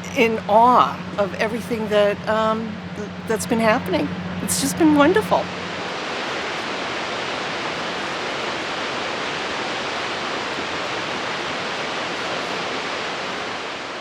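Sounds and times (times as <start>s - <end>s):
waterfall rushing: 0.0s - 14.0s.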